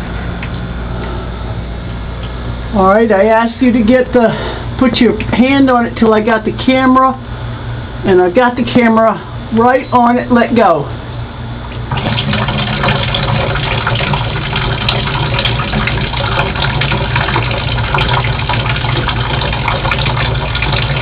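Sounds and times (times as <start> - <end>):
water pouring into a bowl: 11.8 - 21.0.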